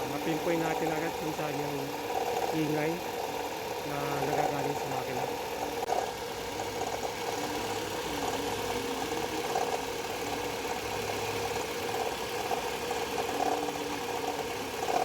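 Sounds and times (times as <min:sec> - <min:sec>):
alternator noise: 0:00.0 - 0:15.0
car engine idling: 0:00.0 - 0:15.0.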